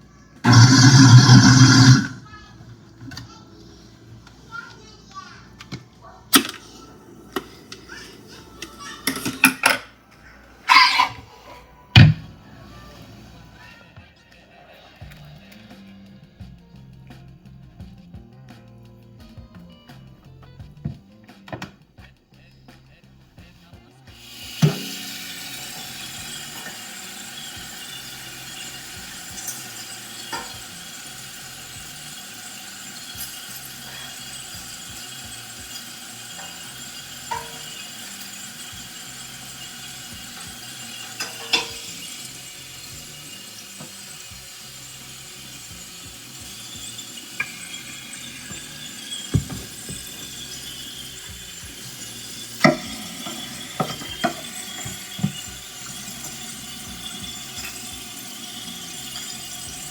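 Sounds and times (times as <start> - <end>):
utensils clinking against cookware: 5.6 - 10.0, 10.6 - 12.2, 24.2 - 59.9.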